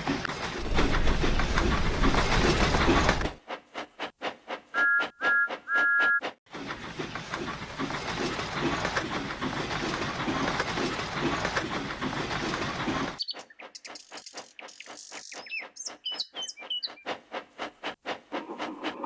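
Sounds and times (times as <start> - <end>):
steam locomotive chuffing: 0.0 - 19.0
two-note steam whistle toots: 4.8 - 6.2.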